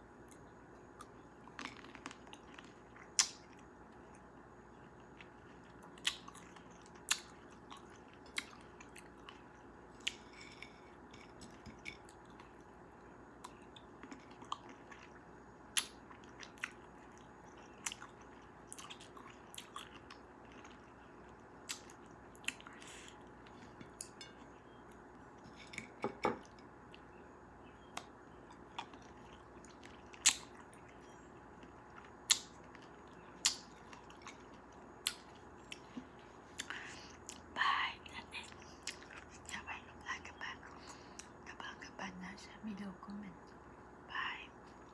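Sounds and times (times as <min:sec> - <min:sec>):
chewing and biting cherries: 0:04.9 - 0:12.7, 0:13.4 - 0:26.0, 0:27.9 - 0:37.6.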